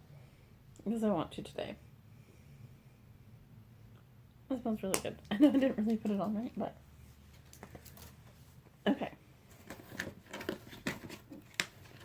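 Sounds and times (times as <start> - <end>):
packaging clicks and rustles: 7.3 - 8.3, 9.5 - 12.0.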